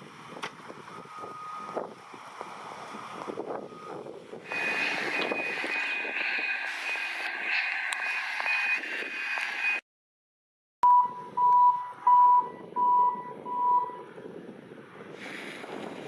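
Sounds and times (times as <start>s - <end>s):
machine and engine noise: 0.3s - 9.8s
low-pitched backup alarm beeps: 3.7s - 9.8s, 10.8s - 14.0s
high-pitched reversing beeps: 4.5s - 9.8s.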